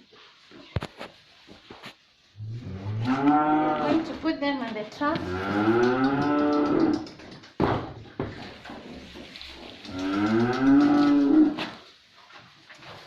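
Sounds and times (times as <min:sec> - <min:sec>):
cows mooing: 0:02.5 - 0:04.0, 0:05.2 - 0:07.0, 0:09.8 - 0:11.7.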